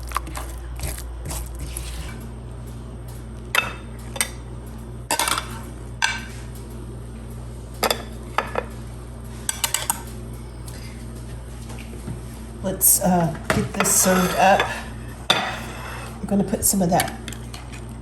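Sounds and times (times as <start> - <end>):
steady low hum: 0.0 - 18.0
utensils clinking against dishes: 5.1 - 6.4, 7.8 - 8.8, 9.4 - 11.0, 13.1 - 17.8.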